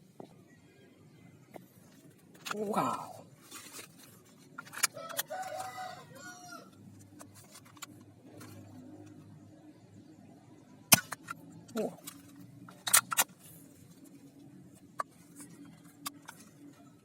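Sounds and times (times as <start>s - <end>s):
rooster crowing: 4.9s - 6.8s.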